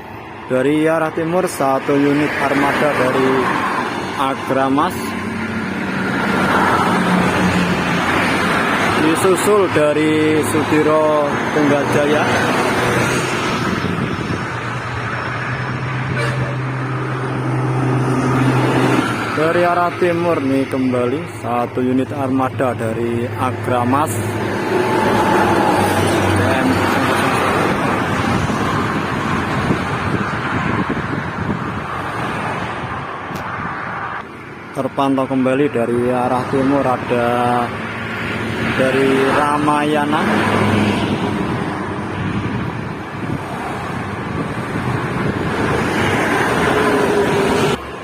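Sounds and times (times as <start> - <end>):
bus passing at speed: 0.0 - 48.0
wind buffeting microphone: 12.2 - 19.4, 24.4 - 33.9, 40.5 - 47.8.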